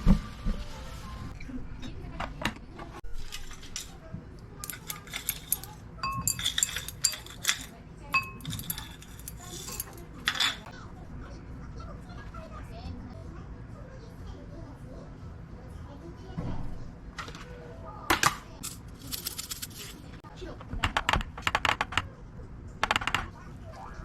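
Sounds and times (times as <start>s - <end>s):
dishes and glassware clinking: 4.6s - 10.7s.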